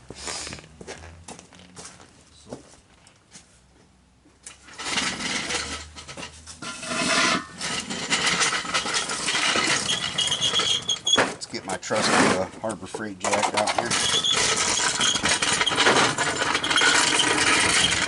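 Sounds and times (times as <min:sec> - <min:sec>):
equipment rubbing and scraping: 0:04.6 - 0:18.0
short squeaks: 0:08.4 - 0:11.4, 0:13.9 - 0:18.0.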